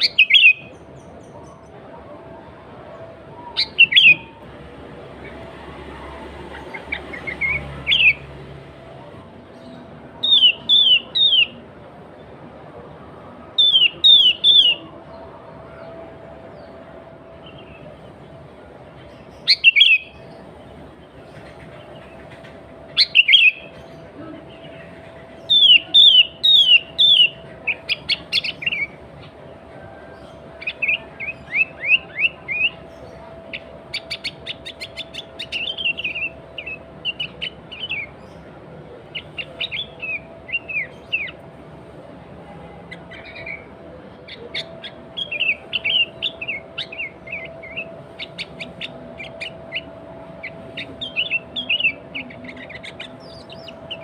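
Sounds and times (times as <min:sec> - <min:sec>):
bird singing whistled notes: 0:00.0 - 0:01.3, 0:03.5 - 0:04.4, 0:10.2 - 0:11.6, 0:13.6 - 0:14.9, 0:19.2 - 0:20.3, 0:23.0 - 0:23.8, 0:25.4 - 0:29.0, 0:44.3 - 0:54.0.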